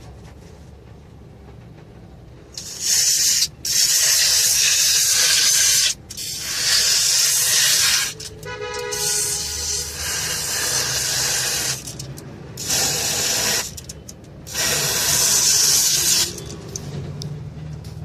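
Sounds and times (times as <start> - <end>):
aerosol can spraying: 2.6 - 8.2, 8.9 - 13.9, 14.5 - 16.4.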